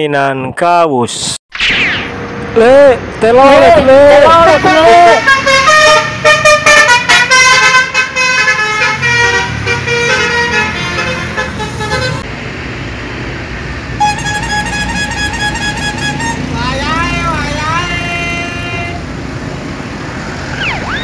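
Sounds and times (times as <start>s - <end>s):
multi-tone bus horn melody: 4.3s - 12.3s, 14.0s - 19.0s
long horn tone: 4.4s - 12.2s, 14.0s - 19.0s.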